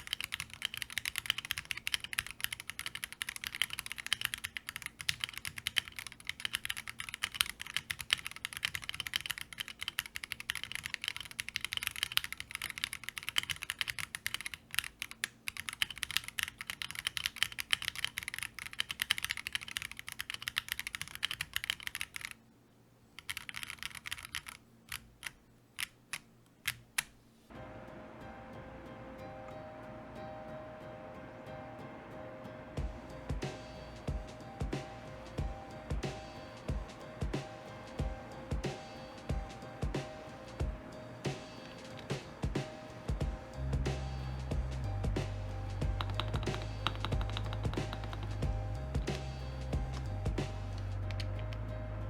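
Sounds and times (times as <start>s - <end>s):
mechanical keyboard typing: 0.0s - 22.4s, 23.2s - 27.1s, 41.6s - 43.2s, 45.4s - 51.6s
soft background music: 27.5s - 52.0s.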